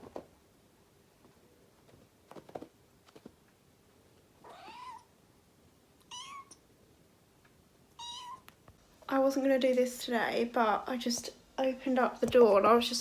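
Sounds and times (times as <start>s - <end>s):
kitten meowing: 4.4s - 5.1s, 6.1s - 6.6s, 8.0s - 8.5s.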